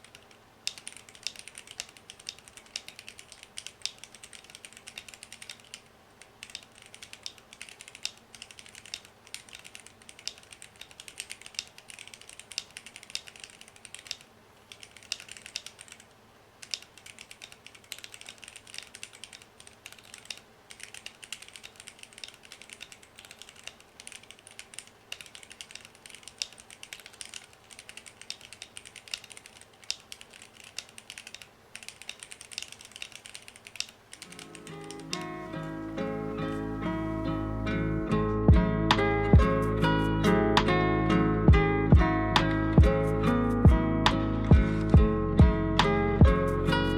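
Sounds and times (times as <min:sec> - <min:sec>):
mechanical keyboard keystroke clacks: 0:00.0 - 0:36.3.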